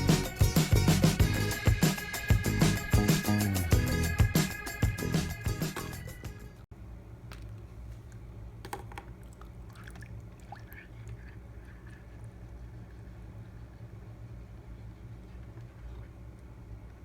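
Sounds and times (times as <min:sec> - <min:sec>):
aquarium water pump humming: 0:06.9 - 0:17.0
water trickling: 0:09.0 - 0:13.4.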